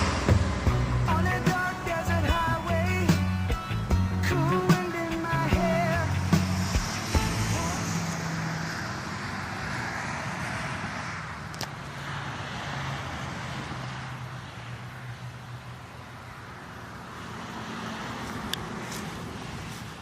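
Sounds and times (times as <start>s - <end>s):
outdoor background noise: 0.0s - 20.0s
small click: 11.5s - 11.7s.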